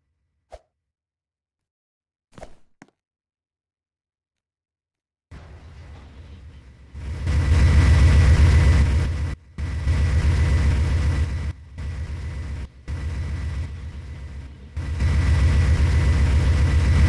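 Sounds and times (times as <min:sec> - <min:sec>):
train engine throbbing: 0:05.3 - 0:17.0.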